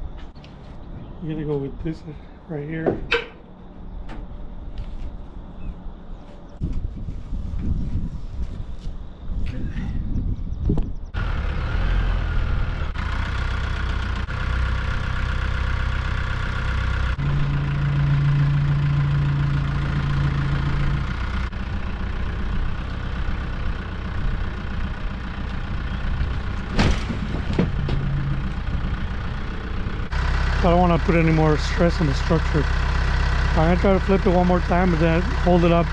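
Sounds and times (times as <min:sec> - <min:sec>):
tractor engine under load: 0:11.2 - 0:35.9.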